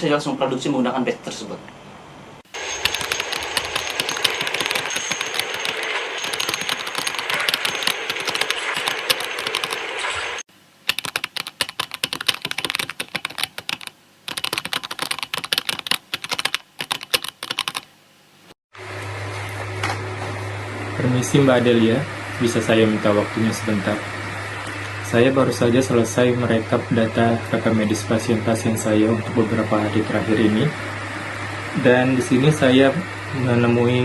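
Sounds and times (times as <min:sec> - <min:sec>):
typing on computer keyboard: 0:02.8 - 0:09.8, 0:10.9 - 0:17.9.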